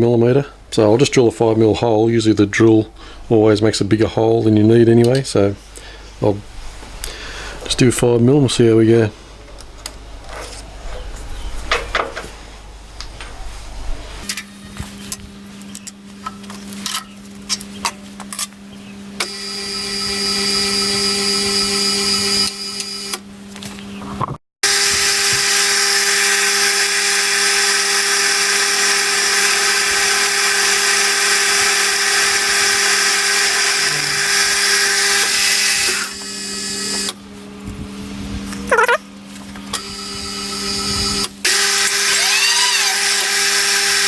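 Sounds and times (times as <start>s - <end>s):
drill cutting through steel: 19.2s - 23.2s, 24.6s - 37.2s, 39.8s - 44.0s
electric drill humming: 19.2s - 23.2s, 24.7s - 37.1s.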